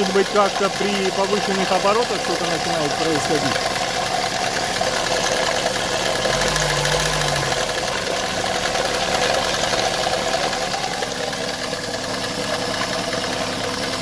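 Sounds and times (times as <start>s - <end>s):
engine running with valve tapping: 0.0s - 14.0s.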